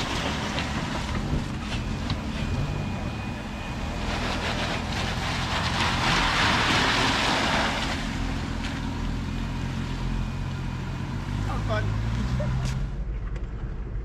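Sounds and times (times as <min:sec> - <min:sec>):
tyres splashing through mud: 0:00.0 - 0:12.9
engine running: 0:00.0 - 0:14.0.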